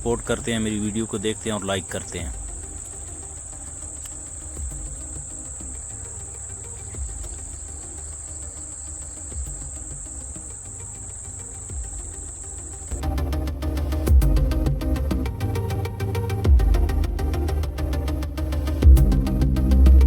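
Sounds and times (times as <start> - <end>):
insects trilling: 0.0 - 13.9
background music with beat: 0.0 - 20.0
low rumble: 12.9 - 20.0.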